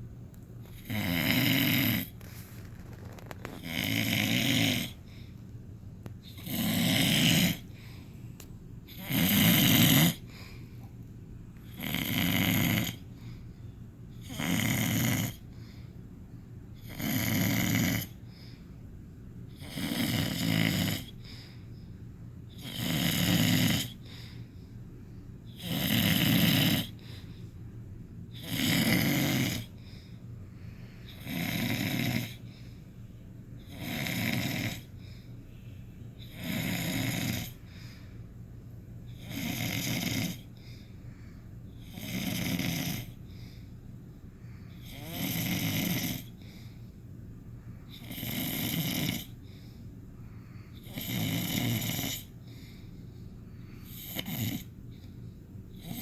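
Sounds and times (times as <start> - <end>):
quiet breathing: 0.0 - 11.8, 12.5 - 14.4, 15.2 - 22.7, 23.3 - 25.6, 26.3 - 56.0
loud snoring: 0.7 - 2.3, 3.1 - 5.0, 6.2 - 7.7, 8.9 - 10.3, 11.7 - 13.1, 14.2 - 15.5, 16.8 - 18.2, 19.5 - 21.2, 22.5 - 24.0, 25.5 - 27.0, 28.3 - 29.8, 31.1 - 32.4, 33.7 - 35.0, 36.2 - 37.6, 39.2 - 40.5, 41.8 - 43.2, 44.8 - 46.4, 47.9 - 49.4, 50.7 - 52.4, 53.8 - 54.7, 55.8 - 56.0.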